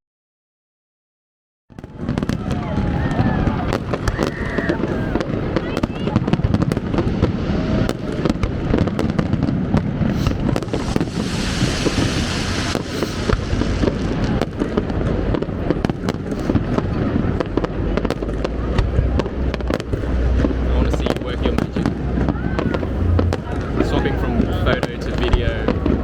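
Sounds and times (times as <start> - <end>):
fireworks bangs and crackling: 1.7 - 26.0
fizzing firework burst: 1.8 - 26.0
low rumble: 10.1 - 26.0.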